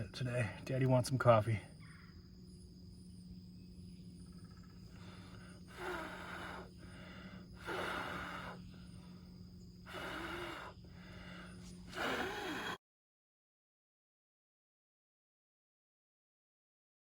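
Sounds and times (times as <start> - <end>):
person blowing on fire: 5.6 - 6.7, 7.6 - 8.6, 9.9 - 10.8, 11.9 - 12.8.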